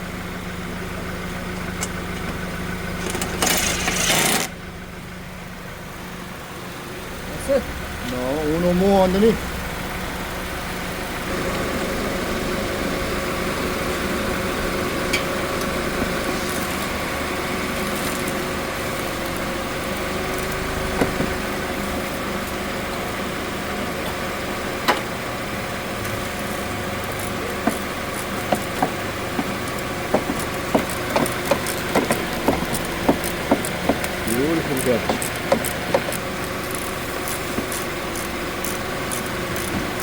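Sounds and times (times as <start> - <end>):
steady mechanical hum: 0.0 - 40.0
sharp clicks and taps of fasteners: 27.1 - 39.9.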